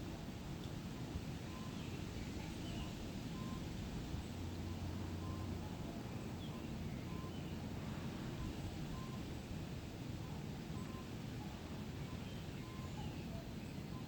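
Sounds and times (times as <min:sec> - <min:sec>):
wind in forest: 0:00.0 - 0:14.0
bird calling: 0:10.2 - 0:14.0.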